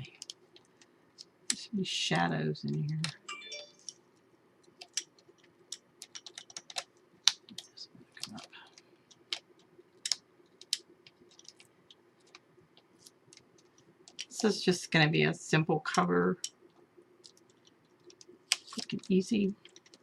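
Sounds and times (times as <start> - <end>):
faint steady hum: 0.0 - 20.0
paper pieces clicking and tapping: 4.7 - 8.5, 9.1 - 12.4, 17.2 - 20.0.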